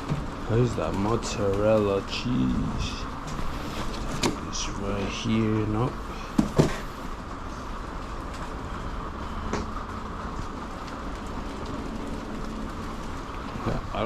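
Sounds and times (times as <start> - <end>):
faint constant hum: 0.0 - 14.0
truck interior drone and hiss: 0.0 - 14.0.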